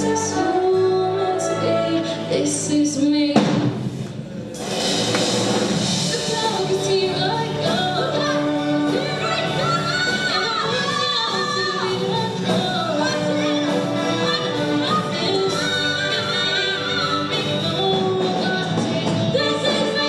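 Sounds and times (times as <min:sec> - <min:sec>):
live band with singing: 0:00.0 - 0:20.0.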